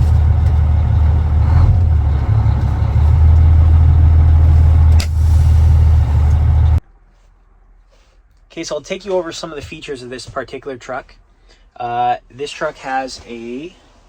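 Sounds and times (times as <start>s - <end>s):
diesel truck engine drone: 0.0s - 6.8s.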